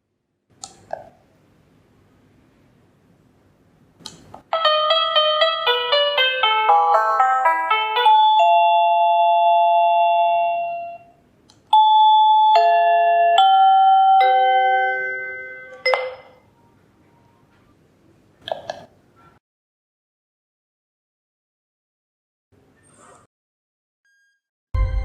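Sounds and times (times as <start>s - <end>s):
electronic doorbell chime: 4.5s - 16.4s.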